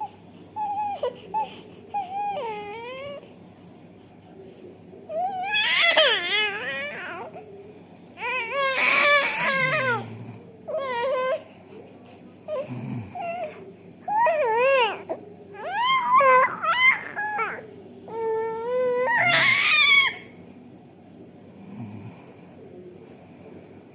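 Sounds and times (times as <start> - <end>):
baby crying: 0.0 - 3.2, 5.1 - 7.4, 8.2 - 11.6, 12.5 - 20.4.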